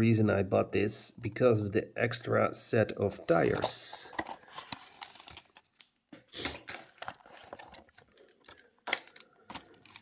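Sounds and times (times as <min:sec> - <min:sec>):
plastic packaging rustling: 0:03.2 - 0:10.0.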